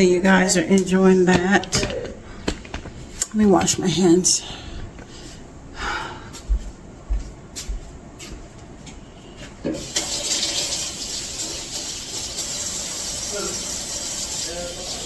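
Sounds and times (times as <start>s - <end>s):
faucet water running into sink: 9.7s - 15.0s.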